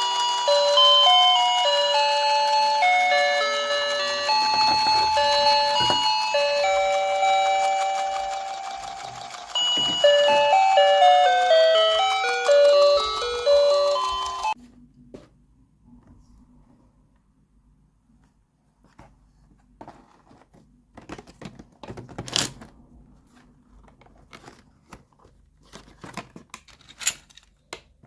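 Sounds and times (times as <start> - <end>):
electronic beeping melody: 0.0 - 14.6.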